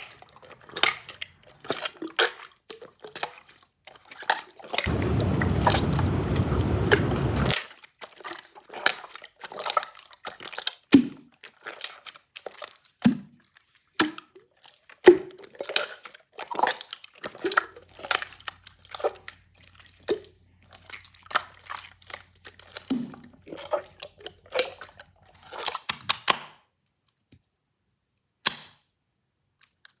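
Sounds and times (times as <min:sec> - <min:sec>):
steady rushing noise: 0:04.9 - 0:07.5.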